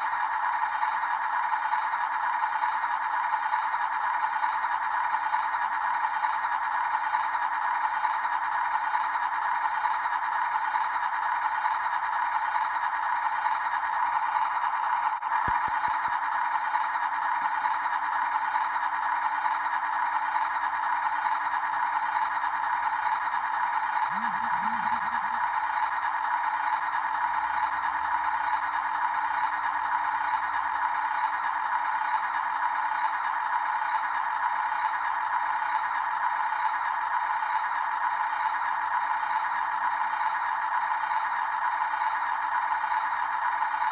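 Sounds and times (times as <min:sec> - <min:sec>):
toy motors whirring with rattle: 0:00.0 - 0:43.9.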